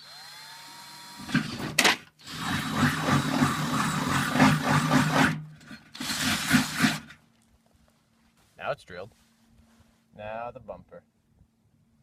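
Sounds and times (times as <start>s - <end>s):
drill bit grinding through metal: 0.0s - 7.2s
drill motor hum: 0.0s - 7.2s.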